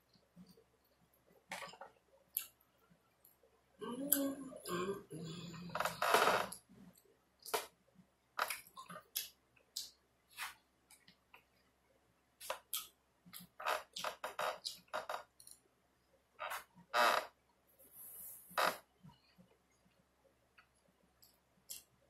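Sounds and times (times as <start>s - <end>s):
person chewing and lip smacking: 3.8s - 4.8s, 8.4s - 11.1s.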